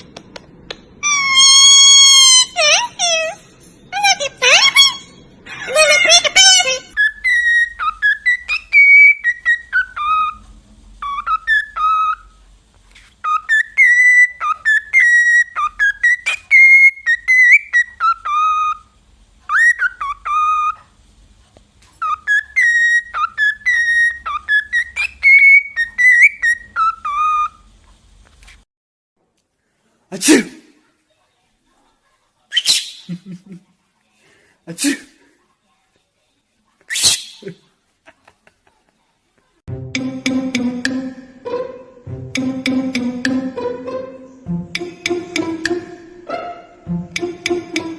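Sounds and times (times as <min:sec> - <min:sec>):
parrot whistling a tune: 0:01.0 - 0:03.4, 0:05.8 - 0:10.4, 0:11.0 - 0:12.4, 0:13.2 - 0:18.9, 0:19.5 - 0:20.9, 0:22.0 - 0:27.7.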